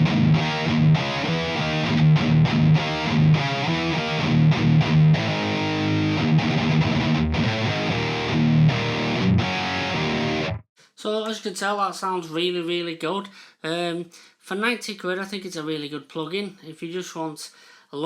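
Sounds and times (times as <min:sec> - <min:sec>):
distorted electric guitar riff: 0:00.0 - 0:10.6.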